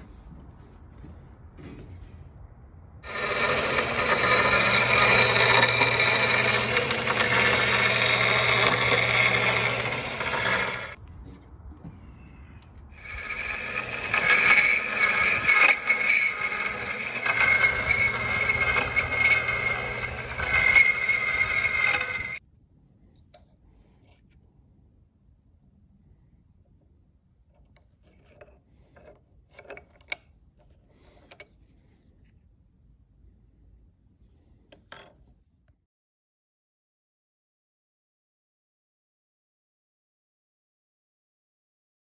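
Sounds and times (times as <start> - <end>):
power tool working metal: 3.0 - 11.0, 13.0 - 22.4.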